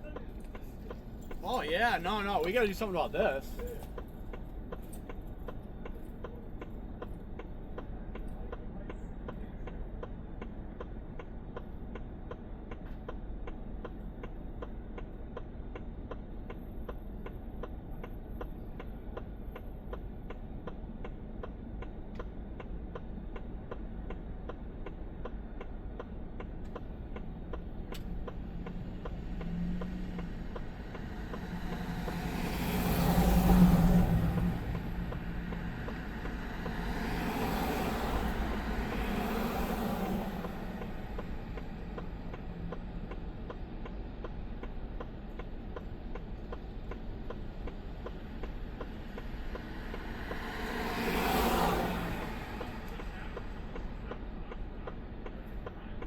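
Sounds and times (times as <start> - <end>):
vehicle engine hum: 0.0 - 56.0
rapid ticking: 0.1 - 6.0, 25.2 - 56.0
low rumble: 26.8 - 43.6.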